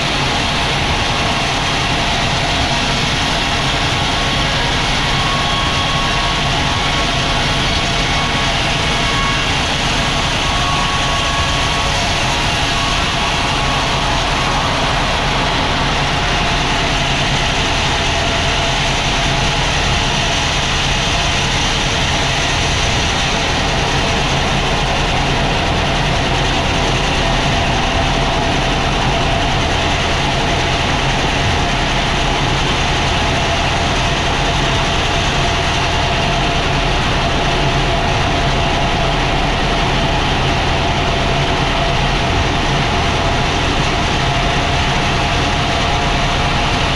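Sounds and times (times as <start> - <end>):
constant tone: 0.0 - 46.9
sawmill machinery drone: 0.0 - 46.9.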